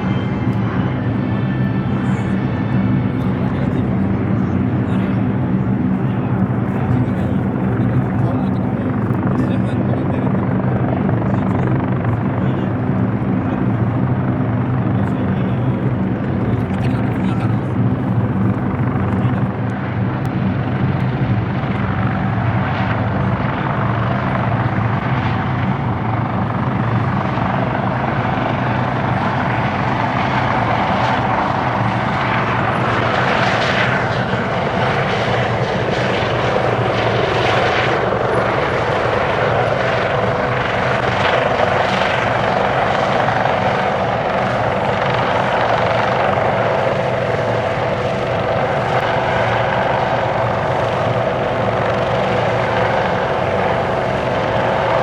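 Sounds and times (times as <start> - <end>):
helicopter rotor drone: 0.0 - 55.0
turbine whine: 0.0 - 55.0.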